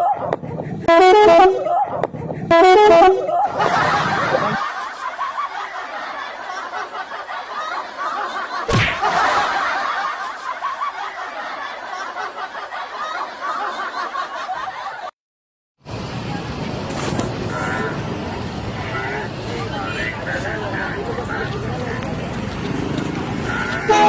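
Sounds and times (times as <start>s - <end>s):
people laughing: 3.2s - 15.2s, 18.8s - 24.0s
sharp bang: 8.7s - 9.2s.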